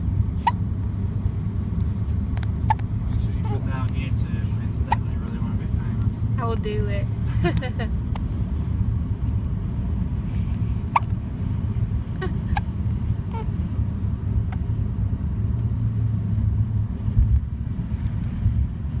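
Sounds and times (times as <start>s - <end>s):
steady low rumble: 0.0s - 19.0s
baby hiccups: 0.4s - 0.6s.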